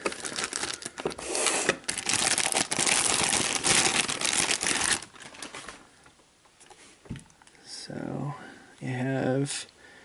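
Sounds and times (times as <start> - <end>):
plastic packaging crinkling: 0.0 - 5.9.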